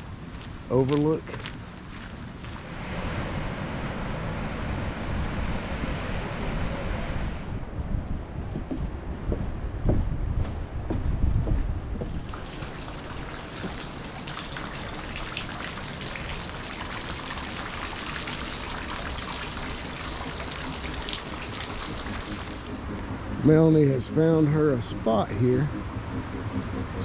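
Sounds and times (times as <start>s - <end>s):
wind buffeting microphone: 0.0s - 27.0s
waterfall rushing: 12.2s - 22.8s.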